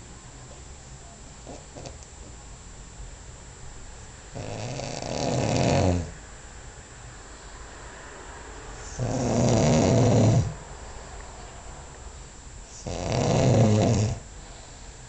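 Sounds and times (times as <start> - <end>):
man snoring heavily: 4.4 - 6.2, 8.8 - 10.6, 12.8 - 14.3.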